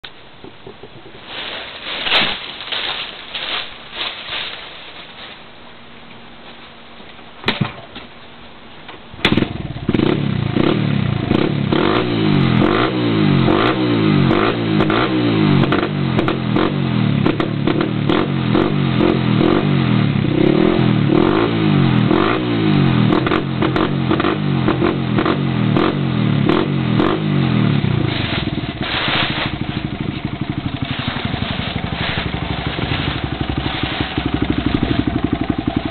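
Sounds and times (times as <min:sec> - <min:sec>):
motorcycle engine revving: 0:09.2 - 0:35.9.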